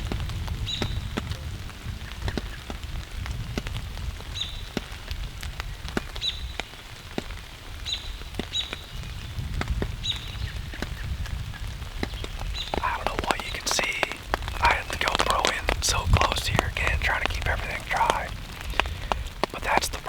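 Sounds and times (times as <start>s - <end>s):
raindrops tapping: 0.0s - 20.0s.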